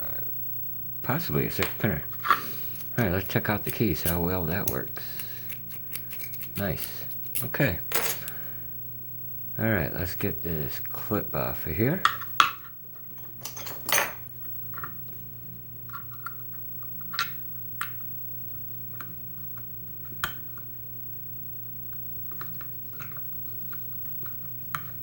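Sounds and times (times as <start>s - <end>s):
steady low hum: 0.0s - 16.9s
metallic clicks and scrapes of tools: 2.2s - 8.4s.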